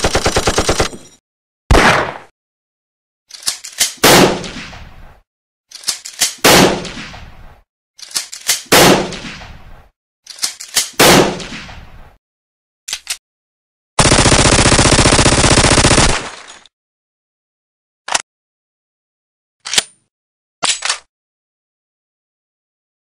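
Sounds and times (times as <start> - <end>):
machine-gun burst: 0.0 - 0.9, 14.0 - 16.4
gunshots with echoing tail: 1.7 - 2.3, 6.5 - 7.4, 8.7 - 9.7, 11.0 - 11.9.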